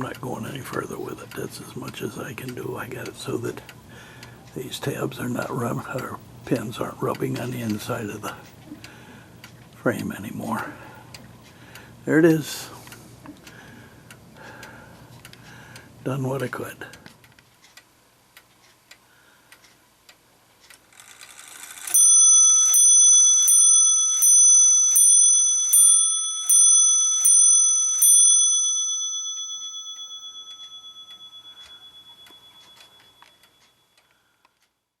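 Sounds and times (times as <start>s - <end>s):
clock ticking: 0.0s - 34.8s
clock striking train whirring: 20.9s - 34.1s
clock bell striking: 21.6s - 33.9s.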